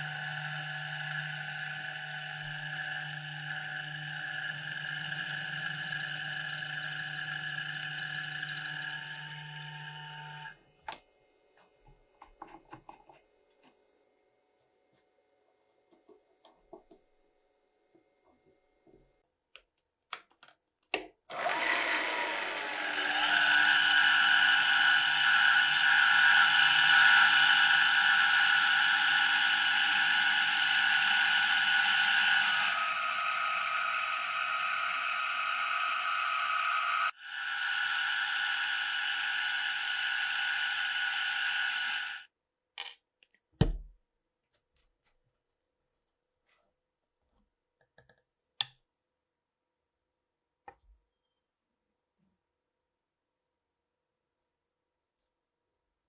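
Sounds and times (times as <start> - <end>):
power tool whining: 0.0 - 10.6, 21.3 - 42.3.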